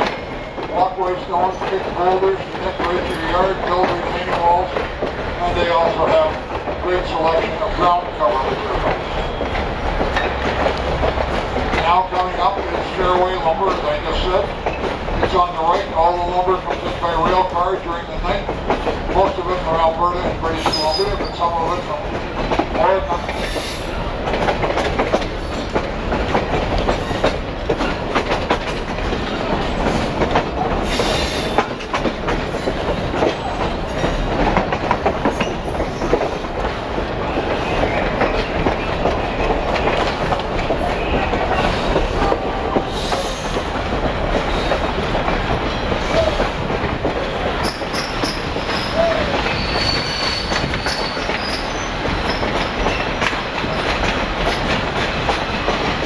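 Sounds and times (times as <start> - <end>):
train rumbling along track: 0.0 - 56.0
wheels clicking over rail joints: 0.0 - 56.0
high wheel squeal: 47.6 - 53.1.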